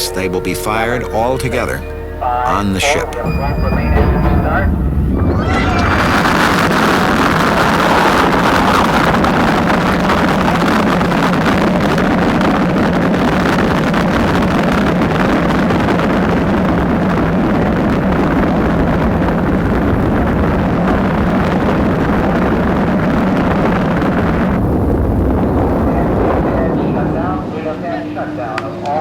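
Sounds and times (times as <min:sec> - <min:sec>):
rocket engines roaring: 0:00.0 - 0:29.0.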